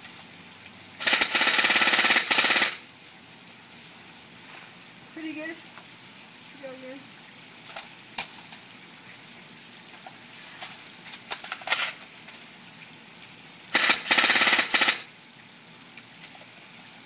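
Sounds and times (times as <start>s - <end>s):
bb gun firing: 1.0s - 2.8s, 13.8s - 15.1s.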